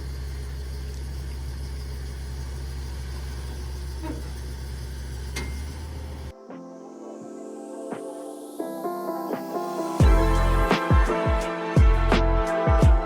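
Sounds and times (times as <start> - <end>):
vehicle engine idling: 0.0 - 6.3
music: 6.3 - 13.0.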